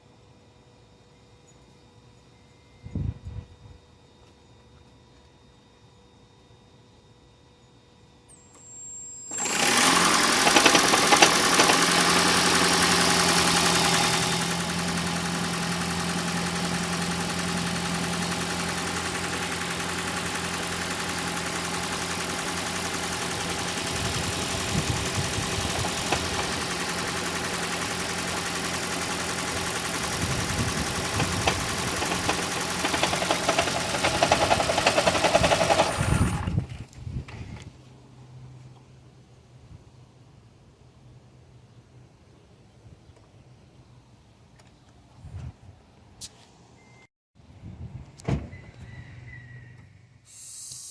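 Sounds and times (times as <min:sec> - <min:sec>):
engine knocking: 0:09.4 - 0:36.6
car engine running: 0:09.4 - 0:36.7.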